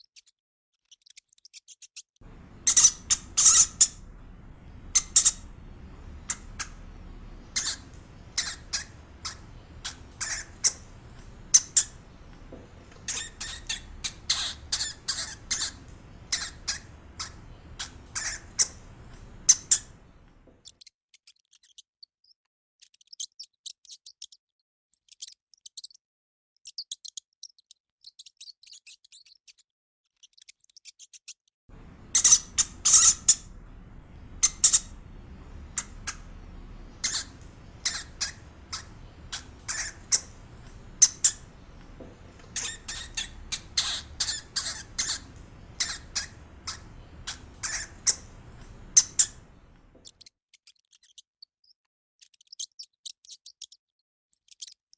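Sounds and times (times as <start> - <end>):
hamster squeaking: 0.8 - 20.8, 30.2 - 53.8
low background noise: 2.2 - 20.6, 31.7 - 50.1.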